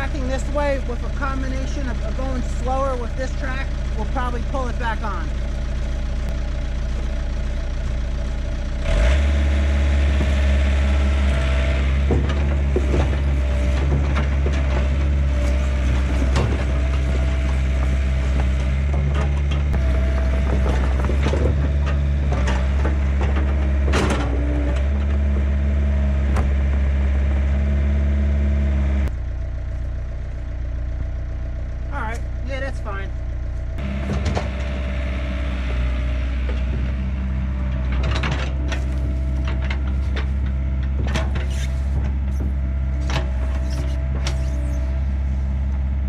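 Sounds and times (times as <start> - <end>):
excavator diesel engine under load: 0.0 - 46.0
undercarriage clunks: 11.8 - 27.6, 33.6 - 45.9.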